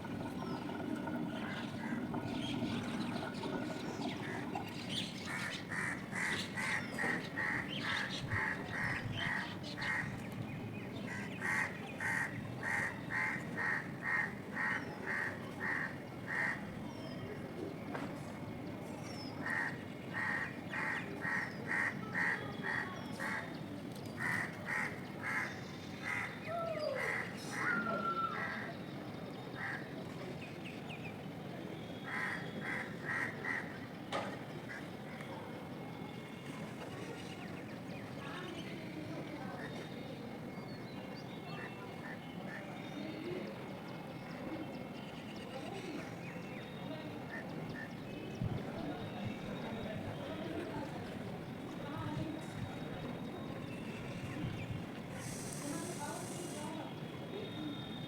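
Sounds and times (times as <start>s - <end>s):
animal or bird calls: 24.2s - 28.7s
background hiss: 55.1s - 56.8s.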